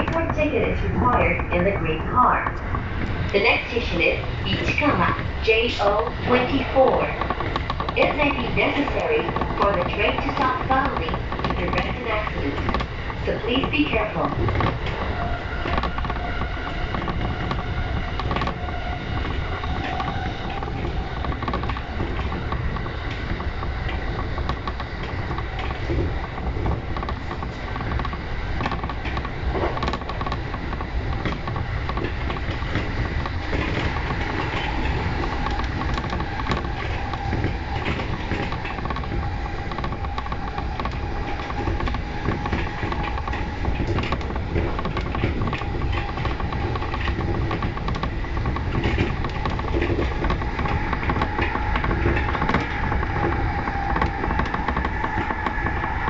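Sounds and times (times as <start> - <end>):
rail clicks: 0.0 - 56.0
train wheels rumbling on rail: 0.0 - 56.0.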